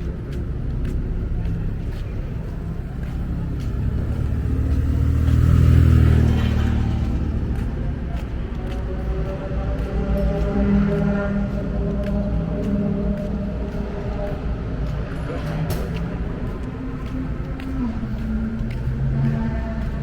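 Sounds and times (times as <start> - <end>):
race car engine rumbling past: 0.7 - 14.4.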